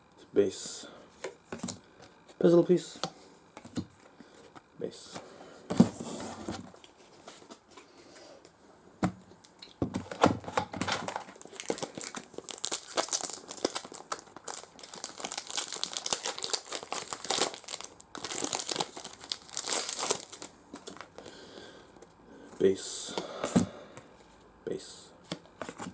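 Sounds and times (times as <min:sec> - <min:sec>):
foil wrappers crinkling and tearing: 0:10.1 - 0:21.4.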